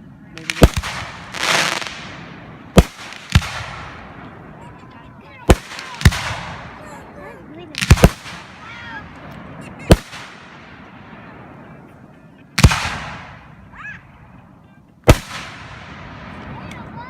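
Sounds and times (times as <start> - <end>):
firework shells booming: 0.4 - 4.6, 5.4 - 6.8, 7.8 - 11.5, 12.6 - 13.7, 15.0 - 16.5.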